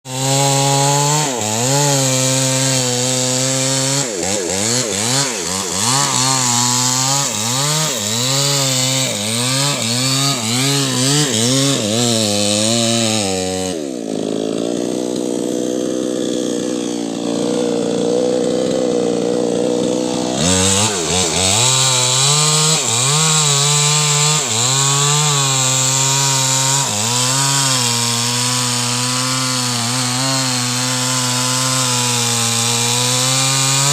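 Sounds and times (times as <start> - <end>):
chainsaw running hard: 0.0 - 33.9.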